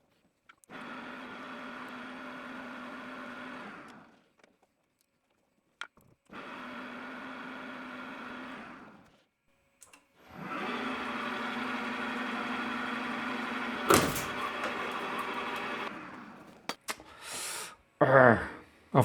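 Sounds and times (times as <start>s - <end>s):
lathe spindle motor whine: 10.3s - 16.2s.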